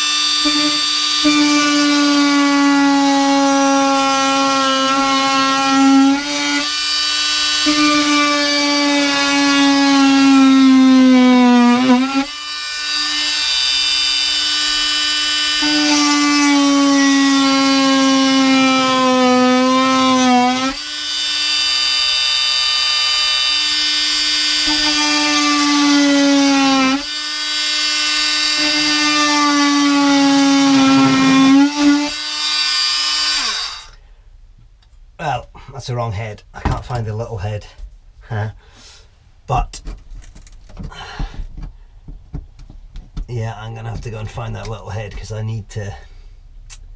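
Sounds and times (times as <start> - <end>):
multi-tool buzzing cutting wood: 0.0 - 34.0.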